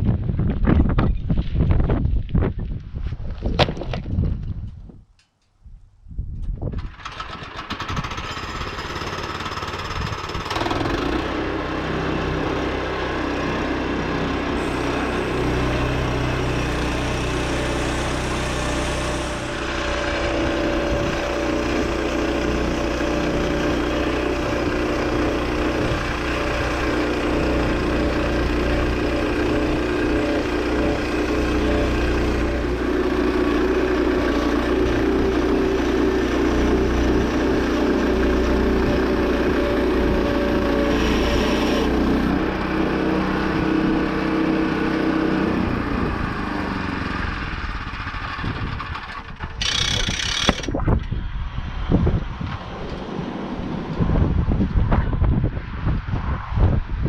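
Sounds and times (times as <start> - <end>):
bandsaw mill sawing a log: 7.1 - 51.0.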